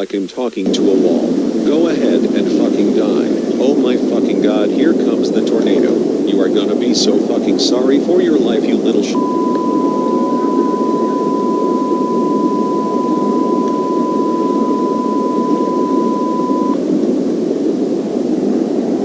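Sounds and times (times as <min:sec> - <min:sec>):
steady electronic tone: 0:09.2 - 0:16.8.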